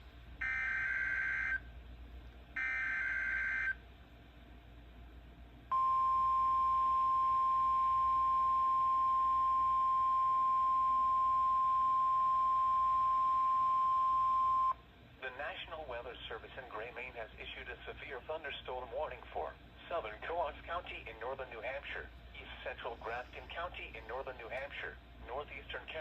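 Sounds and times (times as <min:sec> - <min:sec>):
steady warning alarm tone: 0:00.4 - 0:01.6, 0:02.6 - 0:03.8.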